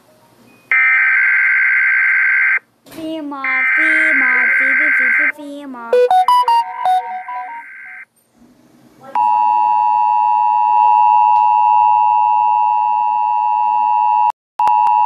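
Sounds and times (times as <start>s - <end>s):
two-tone alarm: 3.5s - 5.3s, 5.9s - 8.0s.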